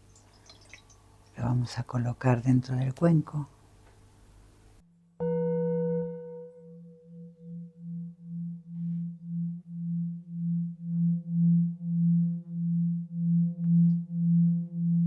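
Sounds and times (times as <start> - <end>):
singing bowl humming: 5.2 - 15.0.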